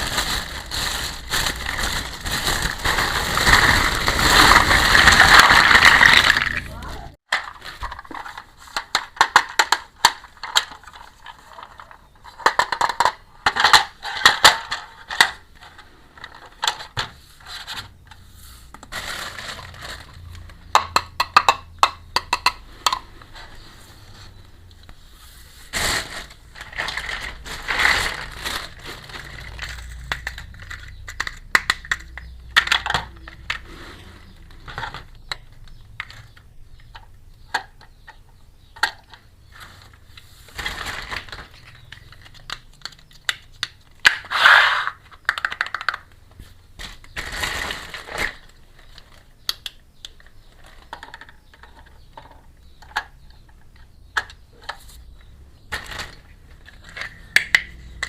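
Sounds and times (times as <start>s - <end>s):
packaging rustling: 0.0s - 8.8s, 18.7s - 20.6s, 25.6s - 30.8s
plastic toy pieces clicking: 3.4s - 15.4s, 41.6s - 46.2s.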